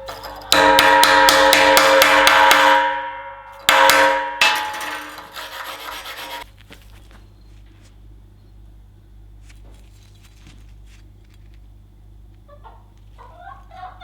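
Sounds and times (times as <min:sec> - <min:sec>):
hammer striking ringing steel: 0:00.0 - 0:06.4.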